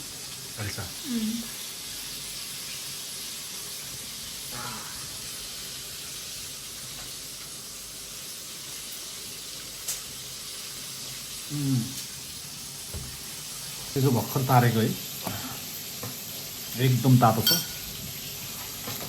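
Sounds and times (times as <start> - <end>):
chicken frying in hot oil: 0.0 - 19.0
short vocal sound: 11.5 - 12.0.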